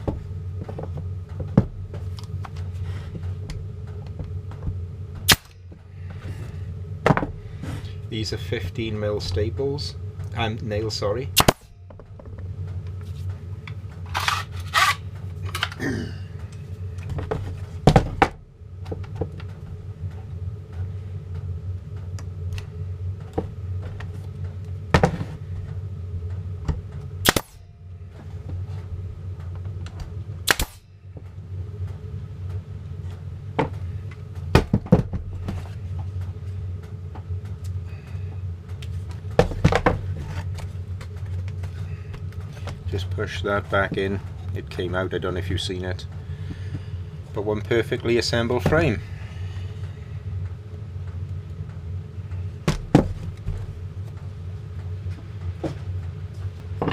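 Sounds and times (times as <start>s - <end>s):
steady low hum: 0.0s - 56.9s
nail gun shots: 5.3s - 5.5s, 11.4s - 11.7s, 27.2s - 27.6s, 30.4s - 30.8s.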